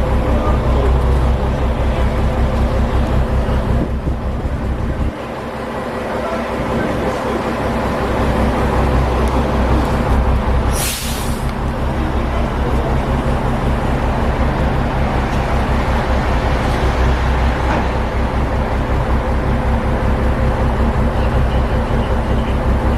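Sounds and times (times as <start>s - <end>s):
large engine humming: 0.0s - 22.9s
short hiss: 10.7s - 11.5s.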